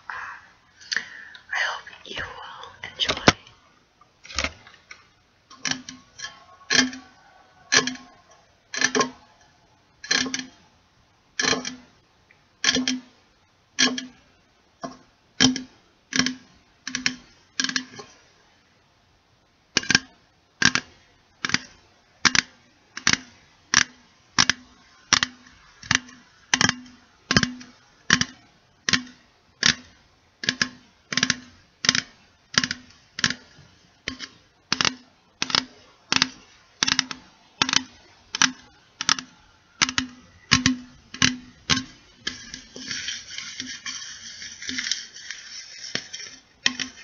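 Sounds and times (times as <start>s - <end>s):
scratchy rustling: 41.5s - 47.0s.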